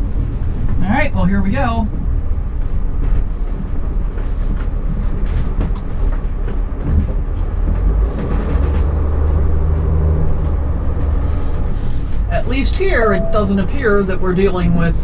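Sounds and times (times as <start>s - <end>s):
engine and road rumble: 0.0s - 15.0s
rattles and knocks: 1.9s - 12.2s.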